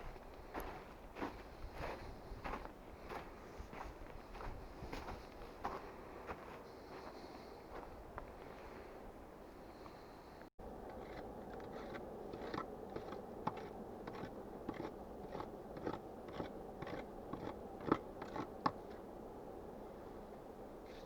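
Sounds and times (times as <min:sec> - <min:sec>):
footsteps crunching in snow: 0:00.0 - 0:08.9
low hiss of wind: 0:00.0 - 0:21.0.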